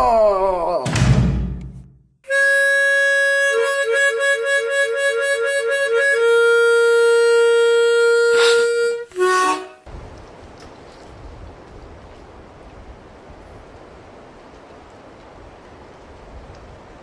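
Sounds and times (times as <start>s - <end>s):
harmonica playing: 2.3s - 9.8s.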